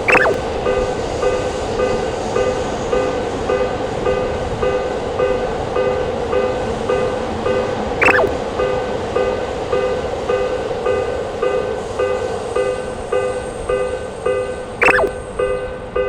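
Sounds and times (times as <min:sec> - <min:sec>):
brief falling tone: 0:00.0 - 0:00.4, 0:08.0 - 0:08.4, 0:14.8 - 0:15.2.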